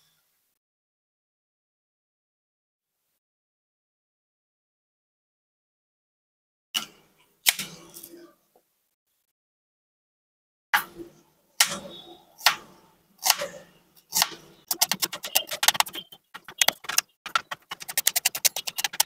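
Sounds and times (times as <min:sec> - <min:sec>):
knife chopping on cutting board: 0:14.1 - 0:19.0.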